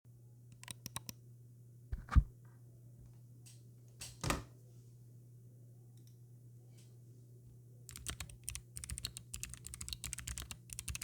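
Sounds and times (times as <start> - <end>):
low electrical hum: 0.1 - 11.0.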